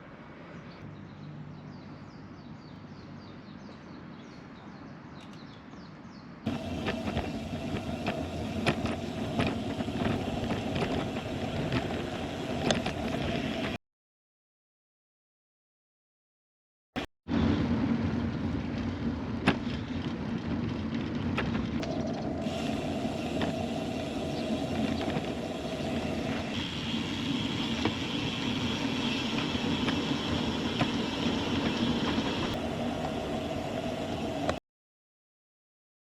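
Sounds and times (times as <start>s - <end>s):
bicycle riding noise: 6.5s - 13.8s, 17.3s - 34.6s.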